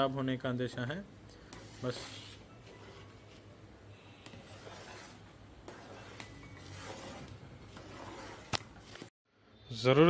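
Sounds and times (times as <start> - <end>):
faint rubbing and handling: 1.5 - 3.6, 4.2 - 9.1.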